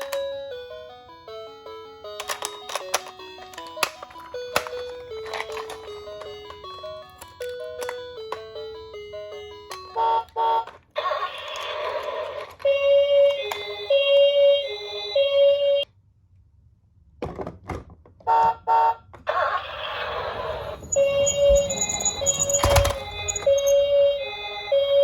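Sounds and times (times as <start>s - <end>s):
two-tone ambulance siren: 3.5s - 15.9s, 18.3s - 25.0s
short beeps: 20.6s - 24.0s.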